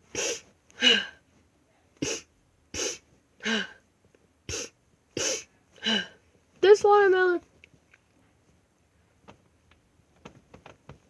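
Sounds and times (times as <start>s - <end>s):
squishy toy puffing air: 0.1s - 0.5s, 2.0s - 3.0s, 4.5s - 5.5s.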